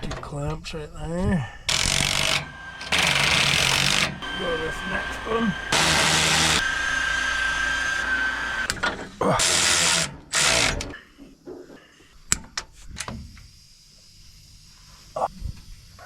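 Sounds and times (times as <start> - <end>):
handheld power tool running: 1.7 - 8.8, 9.4 - 10.9.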